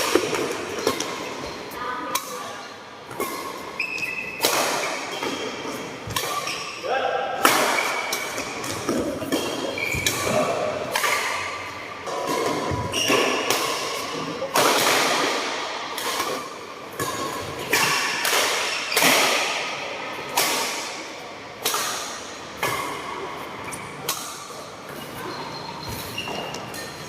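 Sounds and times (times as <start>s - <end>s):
rackets hitting shuttlecock: 0.0s - 1.4s, 2.1s - 6.8s, 7.4s - 24.9s
shoe squeaks: 3.6s - 4.4s, 9.4s - 10.3s, 12.8s - 13.5s, 24.9s - 27.0s.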